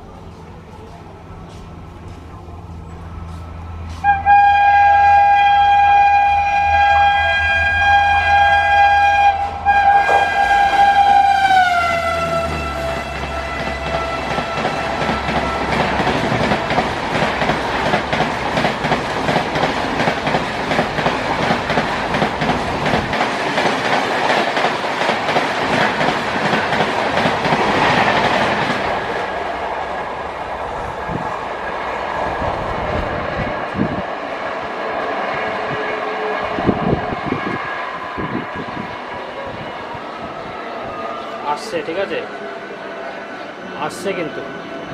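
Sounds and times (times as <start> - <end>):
train horn: 3.9 - 16.2, 35.4 - 38.4
train wheels clattering: 9.9 - 29.0.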